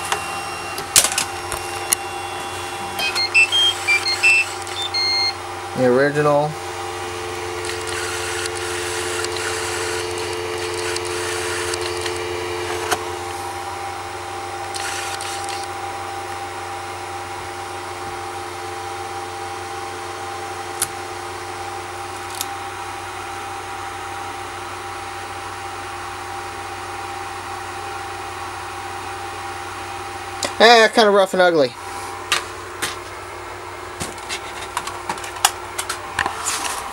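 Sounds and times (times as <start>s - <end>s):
printer fans humming: 0.0s - 36.9s
scraping and handling noises: 34.0s - 36.9s.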